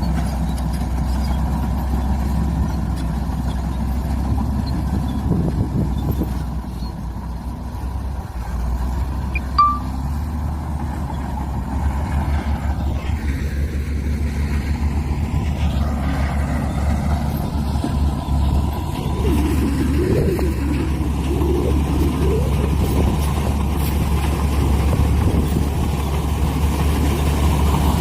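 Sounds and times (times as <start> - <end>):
diesel machinery engine rumble: 0.0 - 28.0
short high beep: 9.4 - 10.0.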